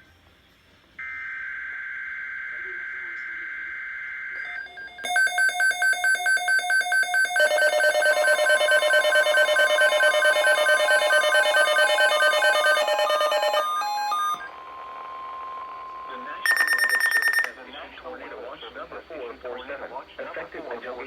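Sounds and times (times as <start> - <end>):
electronic alert beeping: 5.0 - 14.6, 16.4 - 17.5.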